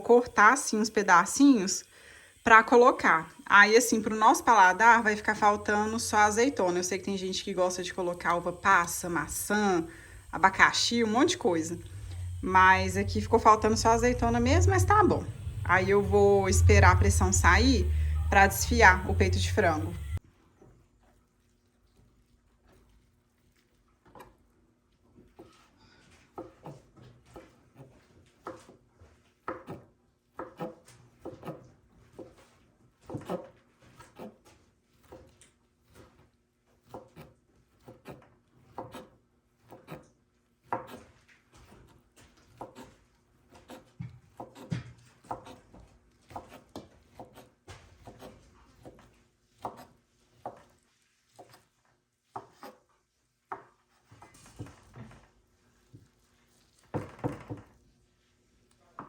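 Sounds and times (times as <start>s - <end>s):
knife cutting on wooden board: 29.4s - 32.4s, 33.0s - 36.2s, 36.8s - 51.7s, 52.3s - 52.8s.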